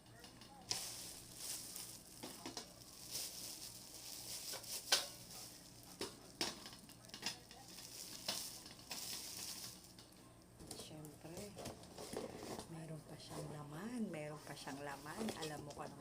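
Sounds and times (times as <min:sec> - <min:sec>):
packaging crinkling and rustling: 0:00.1 - 0:12.7.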